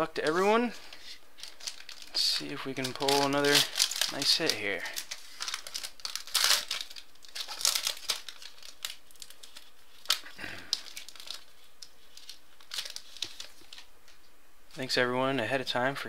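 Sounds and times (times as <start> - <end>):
foil wrapper tearing and crinkling: 1.4 - 13.9.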